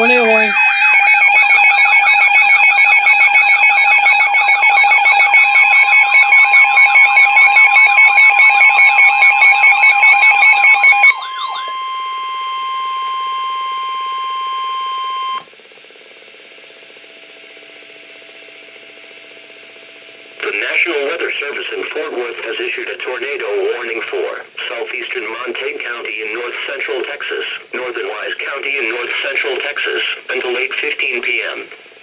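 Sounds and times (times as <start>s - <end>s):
steady alert tone: 0.0s - 10.1s
fast-warbling alarm tone: 0.0s - 15.4s
steady beeping tones: 0.0s - 15.4s.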